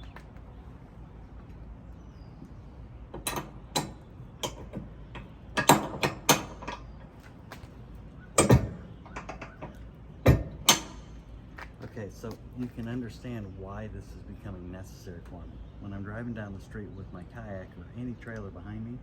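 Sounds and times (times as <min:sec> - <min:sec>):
metal hitch clanking: 0:03.0 - 0:11.8.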